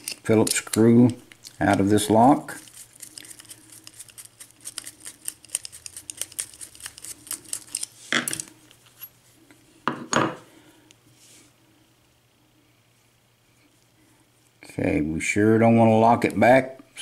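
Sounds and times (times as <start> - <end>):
small metal tools clinking: 0.0 - 1.8.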